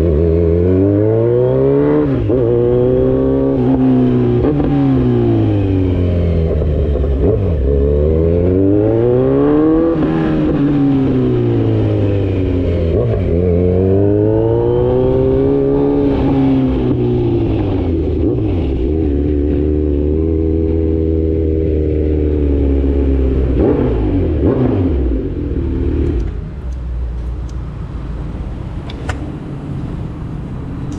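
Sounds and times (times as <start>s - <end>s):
motorcycle engine revving: 0.0s - 26.7s.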